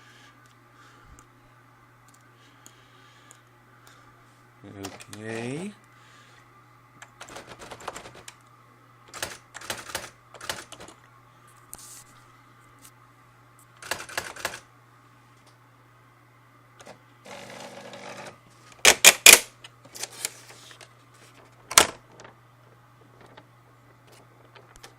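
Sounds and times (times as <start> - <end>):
faint machine hum: 0.0 - 24.9
electronic typewriter clattering: 7.0 - 8.4, 9.1 - 11.0, 13.8 - 14.6, 17.3 - 19.5
typewriter mechanism whirring: 7.1 - 8.3, 9.1 - 11.0, 13.8 - 14.6, 16.8 - 20.4.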